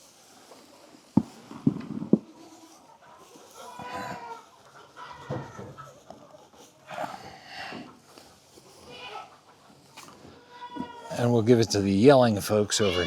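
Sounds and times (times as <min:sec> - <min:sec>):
hay being swept: 0:00.0 - 0:01.6
goats bleating: 0:12.7 - 0:13.0.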